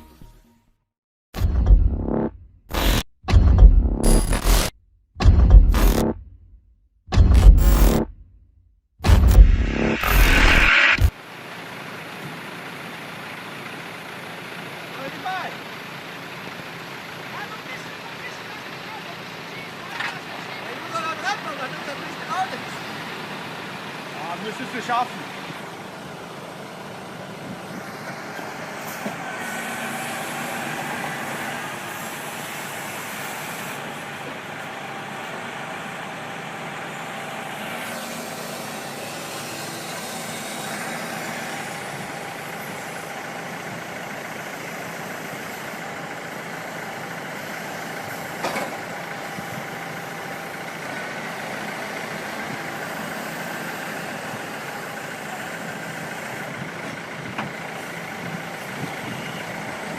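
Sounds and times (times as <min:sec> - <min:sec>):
heavy vehicle engine running: 0:01.4 - 0:06.4, 0:07.1 - 0:08.3, 0:09.0 - 0:59.9
sharp knock: 0:07.1 - 0:08.2, 0:09.0 - 0:11.1.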